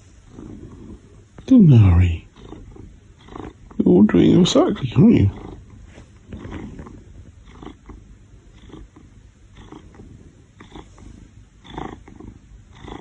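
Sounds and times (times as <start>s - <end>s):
cat purring: 0.0s - 13.0s.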